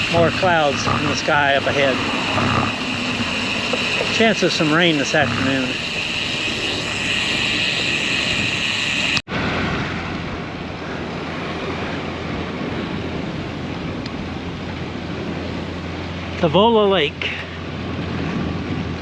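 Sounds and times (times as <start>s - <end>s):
wind rushing over microphone: 0.0s - 19.0s.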